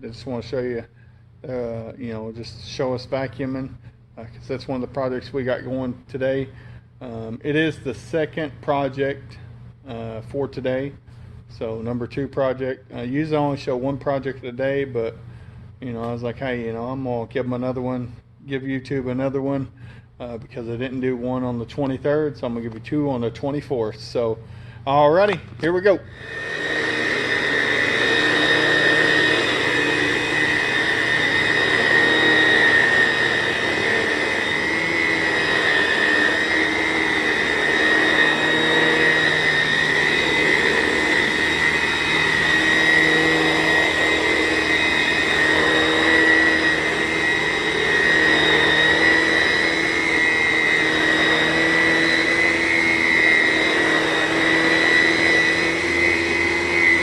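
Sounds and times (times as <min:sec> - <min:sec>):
vacuum cleaner running: 0:00.0 - 0:00.9, 0:25.8 - 0:57.0.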